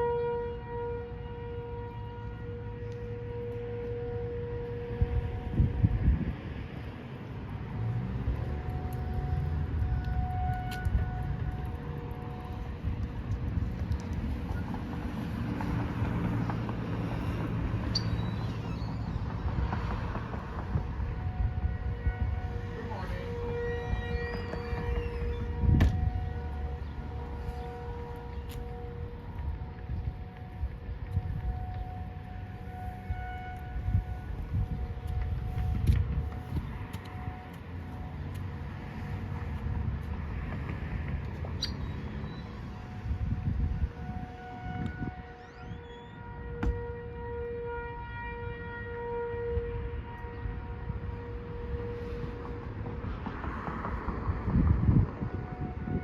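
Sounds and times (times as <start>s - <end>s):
distant warning sirens: 0.0s - 56.0s
road traffic rumbling: 0.0s - 56.0s
high squeak: 23.8s - 25.4s.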